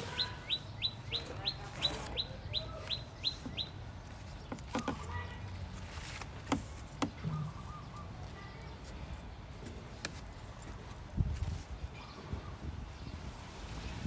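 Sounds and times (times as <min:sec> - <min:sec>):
bird chirping: 0:00.0 - 0:05.3, 0:07.1 - 0:08.8.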